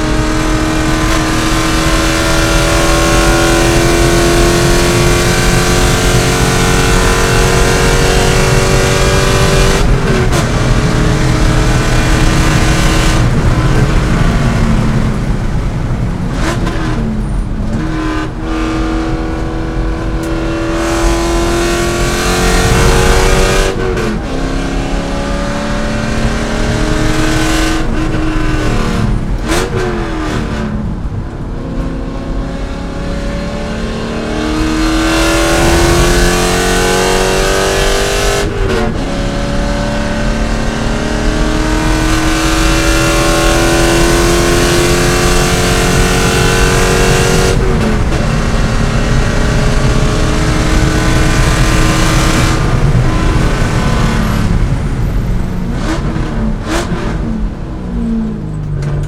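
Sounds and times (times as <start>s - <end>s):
race car engine revving: 0.0s - 59.0s.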